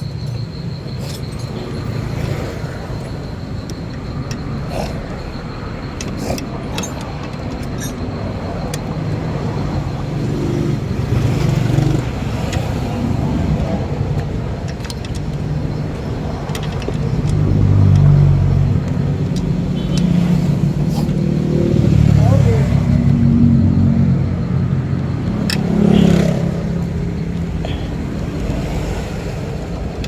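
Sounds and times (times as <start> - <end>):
sharp clicks: 0.0 - 22.1.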